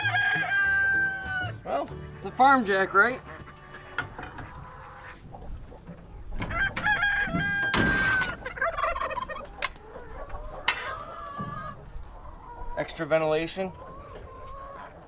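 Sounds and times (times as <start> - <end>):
rooster crowing: 0.0 - 1.6, 6.4 - 12.5
chickens clucking: 0.0 - 15.0.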